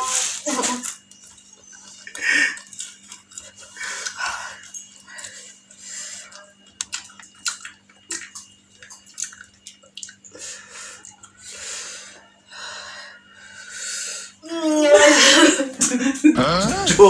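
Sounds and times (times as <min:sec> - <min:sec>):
wet mouth clicks and smacks: 0:06.3 - 0:10.4, 0:11.0 - 0:11.4.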